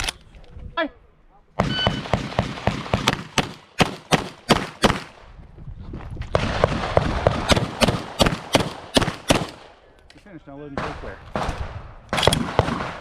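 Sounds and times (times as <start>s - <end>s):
pistol shots: 1.6s - 5.1s, 6.3s - 9.7s, 10.8s - 13.0s.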